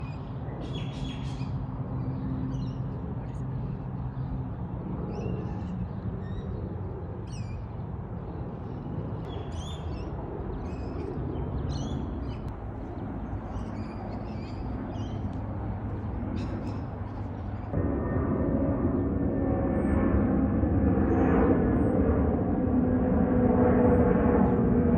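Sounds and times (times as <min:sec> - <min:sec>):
birds calling: 0:00.0 - 0:03.4, 0:07.3 - 0:07.8, 0:09.2 - 0:17.8
steady low rumble: 0:00.0 - 0:24.9.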